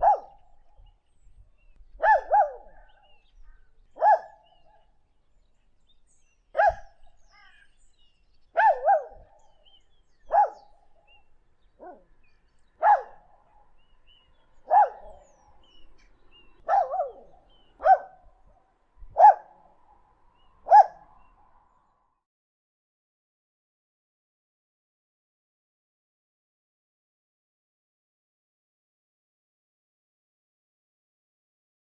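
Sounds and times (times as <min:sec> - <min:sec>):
dog barking: 0:00.0 - 0:00.5, 0:02.0 - 0:03.1, 0:04.0 - 0:04.9, 0:06.6 - 0:07.0, 0:08.5 - 0:09.6, 0:10.3 - 0:11.0, 0:11.8 - 0:12.1, 0:12.8 - 0:13.8, 0:14.6 - 0:15.5, 0:16.6 - 0:18.3, 0:19.1 - 0:19.6, 0:20.6 - 0:21.3.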